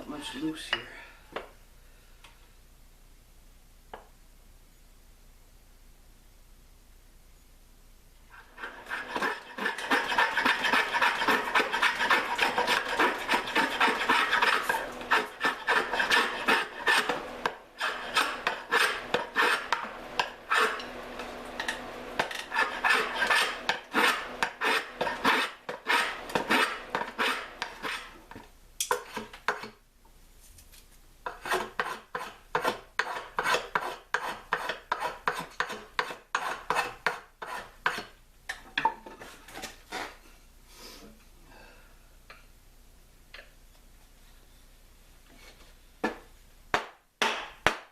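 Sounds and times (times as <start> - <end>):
hand file rasping on wood: 8.5 - 20.9, 22.3 - 28.1, 31.3 - 38.2.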